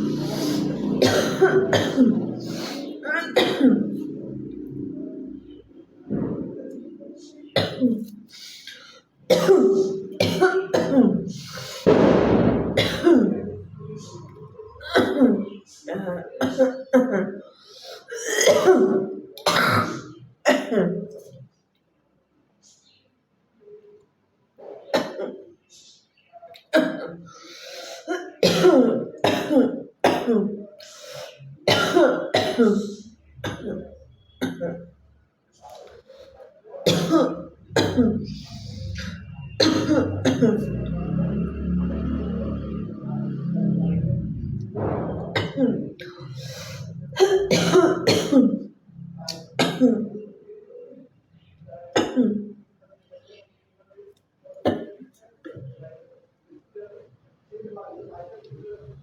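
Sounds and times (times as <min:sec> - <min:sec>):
woman clearing throat: 0:00.1 - 0:04.3, 0:09.3 - 0:11.4, 0:12.8 - 0:14.2, 0:36.8 - 0:40.7, 0:45.2 - 0:48.6, 0:51.9 - 0:52.5
woman coughing: 0:00.6 - 0:04.0, 0:09.3 - 0:11.5, 0:12.8 - 0:13.6, 0:14.8 - 0:17.4, 0:18.1 - 0:21.1, 0:31.7 - 0:34.9, 0:36.9 - 0:38.4, 0:39.6 - 0:40.7, 0:45.4 - 0:46.2, 0:47.2 - 0:48.6.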